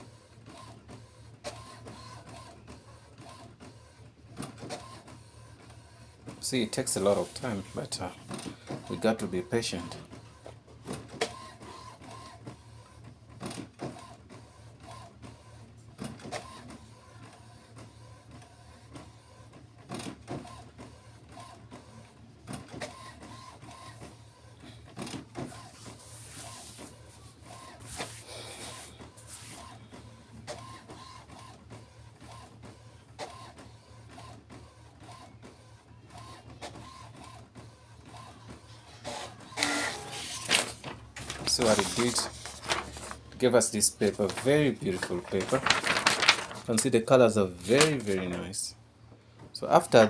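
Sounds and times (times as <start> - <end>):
printer hissing: 6.4 - 9.8, 39.0 - 45.6.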